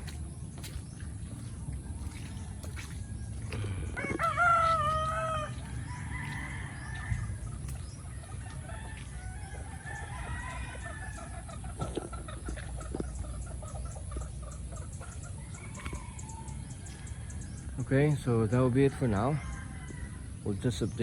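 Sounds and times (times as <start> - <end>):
distant rooster crows: 2.8 - 11.6, 15.4 - 20.6
rooster crowing: 3.5 - 7.5, 8.2 - 11.4, 19.1 - 20.3.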